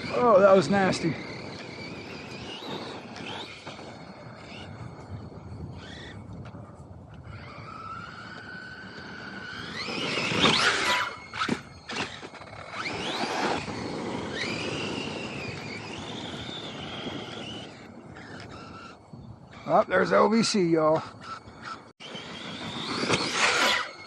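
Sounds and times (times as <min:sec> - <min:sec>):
electric toy car motor whining: 0:00.0 - 0:24.0.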